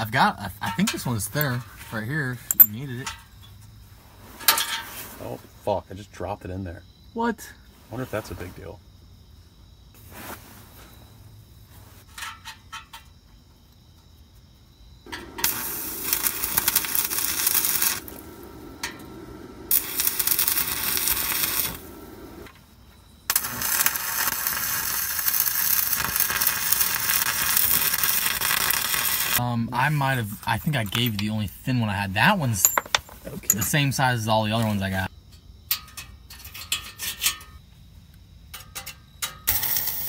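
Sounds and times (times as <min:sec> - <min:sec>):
welding arc crackling sizzle: 0:15.1 - 0:22.5, 0:23.3 - 0:29.4, 0:39.5 - 0:40.0.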